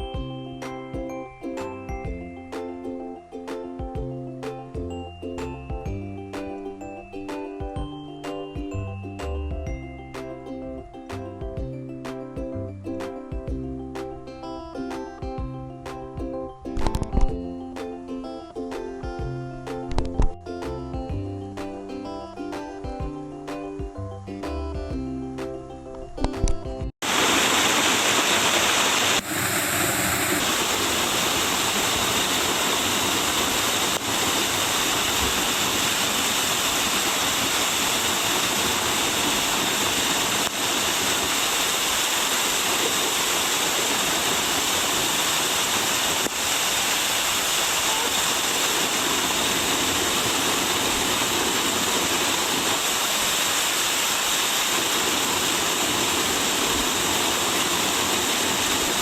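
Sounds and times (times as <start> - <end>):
waterfall rushing: 27.0 - 59.0.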